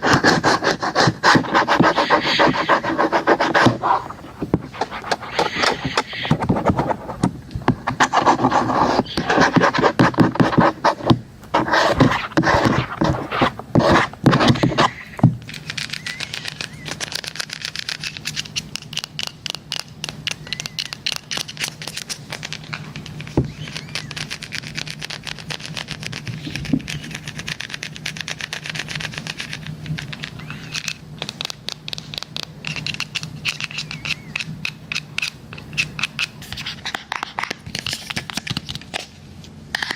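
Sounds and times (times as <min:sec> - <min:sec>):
rapid tapping on device: 0:00.0 - 0:30.2
scratching and rubbing on device: 0:00.0 - 0:38.9
steady low hum: 0:00.0 - 0:39.9.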